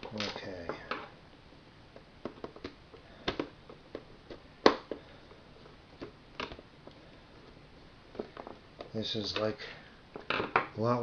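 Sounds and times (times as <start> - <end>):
plastic parts clicking and tapping: 2.0 - 5.0.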